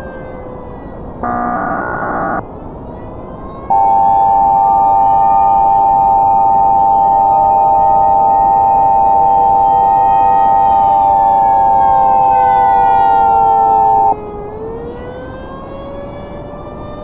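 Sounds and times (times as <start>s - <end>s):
wailing civil defense siren: 0.0s - 17.0s
electronic alert tone: 1.2s - 2.4s.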